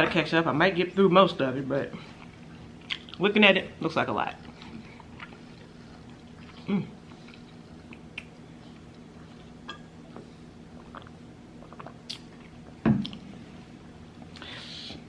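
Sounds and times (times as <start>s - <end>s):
person chewing food: 2.0s - 3.2s, 4.4s - 13.2s.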